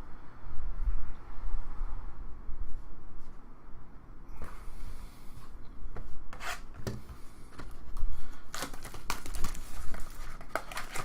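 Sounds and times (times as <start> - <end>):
cards rubbing and scraping: 6.3 - 7.2, 8.3 - 11.0.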